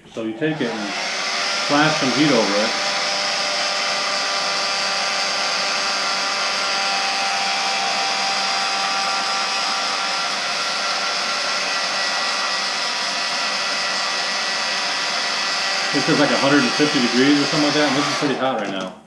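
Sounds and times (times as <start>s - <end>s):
heat gun blowing hot air: 0.4s - 18.7s.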